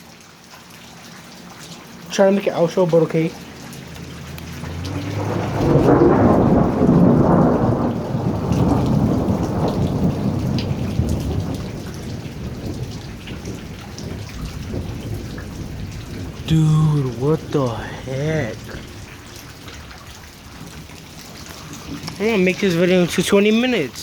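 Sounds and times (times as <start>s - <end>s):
steady rain: 0.0s - 24.0s
rolling thunder: 3.8s - 22.6s.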